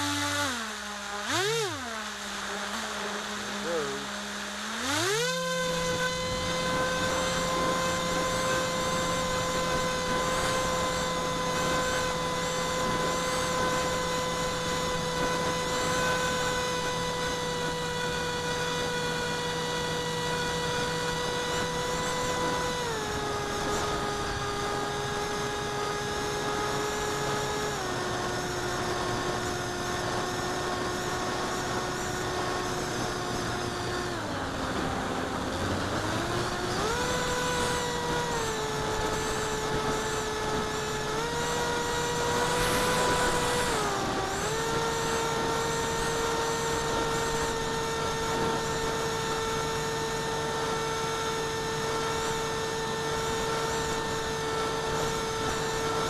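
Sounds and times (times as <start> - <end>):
electric motor and propeller whining: 0.0 - 56.0
air rushing hiss: 42.2 - 44.2.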